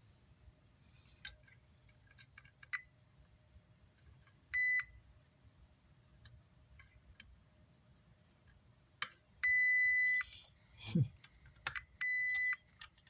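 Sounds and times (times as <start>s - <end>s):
multimeter beep: 4.5s - 5.0s, 9.4s - 10.4s, 11.8s - 12.7s.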